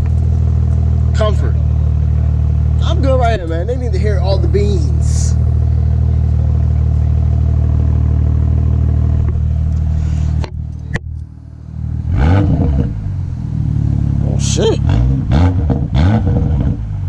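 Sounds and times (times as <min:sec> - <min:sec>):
car exhaust running steadily: 0:00.0 - 0:17.0
exhaust cracks: 0:00.0 - 0:17.0.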